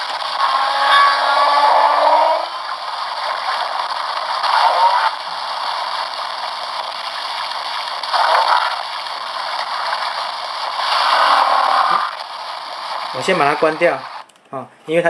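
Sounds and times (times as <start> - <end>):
hissing background noise: 0.0 - 15.0
whale calls through small speaker: 0.2 - 5.2.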